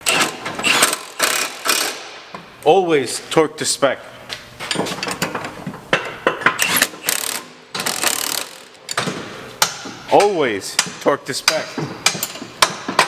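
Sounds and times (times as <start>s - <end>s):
wrench ratcheting clicks: 0.1s - 2.0s, 6.6s - 9.0s
short rattling bursts: 6.7s - 8.9s.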